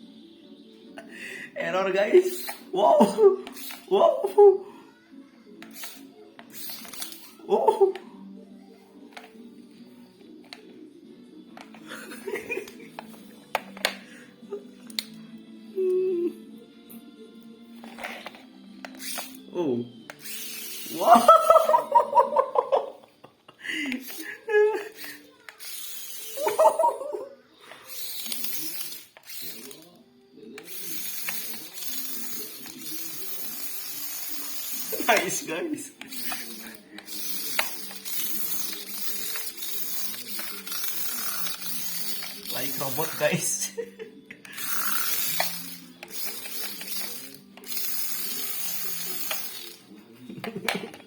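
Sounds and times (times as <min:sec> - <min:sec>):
toy car motor whirring: 0:02.2 - 0:04.0, 0:05.5 - 0:08.0, 0:09.0 - 0:09.5, 0:17.8 - 0:22.3, 0:23.9 - 0:43.7, 0:44.4 - 0:50.0.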